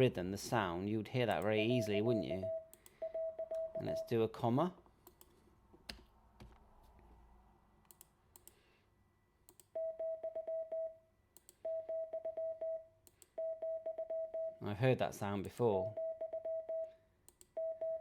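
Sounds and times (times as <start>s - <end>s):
morse code beeps: 1.7s - 4.1s, 11.6s - 14.6s, 16.0s - 16.9s, 17.6s - 18.0s.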